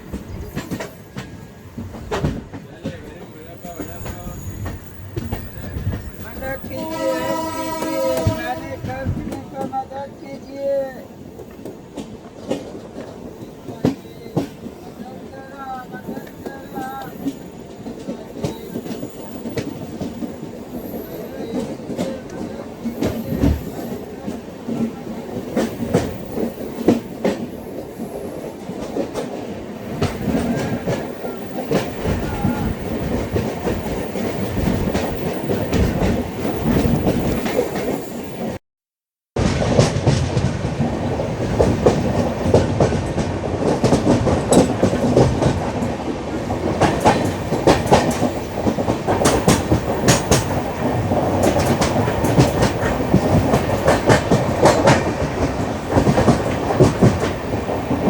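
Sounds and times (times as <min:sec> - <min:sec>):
train coaches rumbling: 0:00.0 - 0:38.6, 0:39.4 - 0:58.0
wheels clicking over rail joints: 0:39.6 - 0:58.0.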